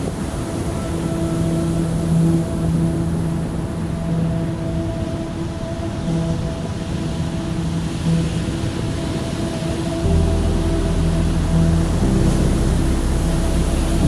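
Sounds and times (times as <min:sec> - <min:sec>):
held low music notes: 0:00.0 - 0:14.0
wind rumble on microphone: 0:00.0 - 0:14.0.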